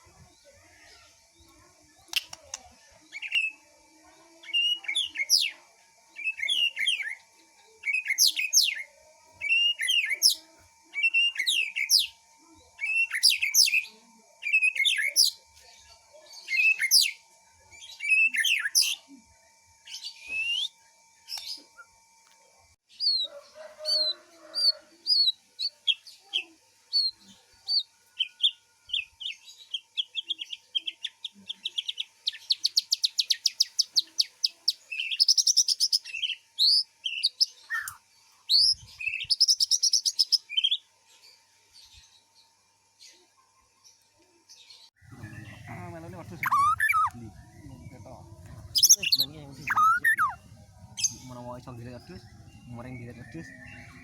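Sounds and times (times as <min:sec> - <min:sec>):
songbird singing: 0:00.0 - 0:19.2, 0:22.9 - 0:54.0
bird chirps: 0:00.4 - 0:05.6, 0:06.2 - 0:10.4, 0:22.9 - 0:41.3, 0:45.0 - 0:54.0.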